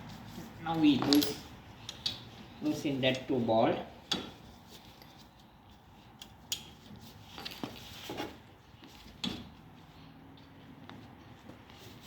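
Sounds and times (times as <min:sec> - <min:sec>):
socket wrench metal clinks: 0:01.0 - 0:02.2.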